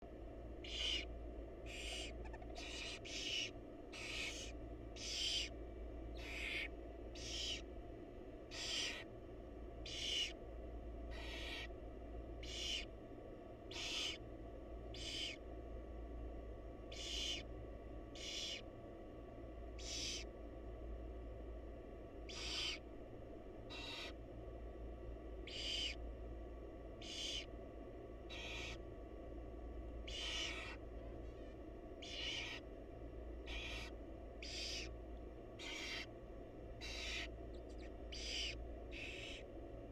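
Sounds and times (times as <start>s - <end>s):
low steady hum: 0.0s - 39.9s
owls hissing: 0.6s - 7.7s, 8.5s - 9.1s, 9.8s - 10.4s, 11.1s - 11.7s, 12.4s - 12.9s, 13.7s - 14.2s, 14.9s - 15.4s, 16.9s - 17.5s, 18.1s - 18.6s, 19.8s - 20.3s, 22.3s - 22.8s, 23.7s - 24.2s, 25.4s - 26.0s, 27.0s - 27.5s, 28.3s - 28.8s, 30.0s - 32.7s, 33.4s - 35.0s, 35.6s - 36.1s, 36.8s - 39.5s.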